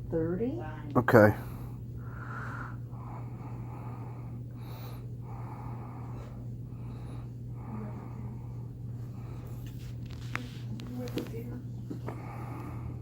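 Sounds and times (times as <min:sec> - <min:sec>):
low electrical hum: 0:00.0 - 0:13.0
person breathing through nose: 0:01.7 - 0:09.6.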